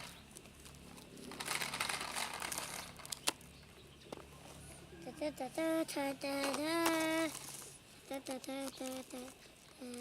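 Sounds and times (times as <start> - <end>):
crinkling rustle: 0.0 - 3.4, 6.2 - 10.0.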